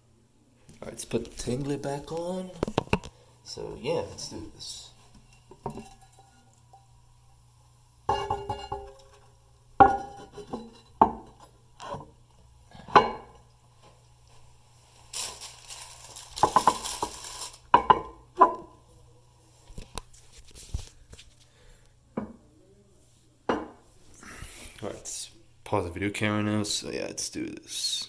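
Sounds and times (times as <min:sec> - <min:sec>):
ceramic toilet lid knocking: 0:09.8 - 0:11.4, 0:12.9 - 0:13.4, 0:23.5 - 0:23.8.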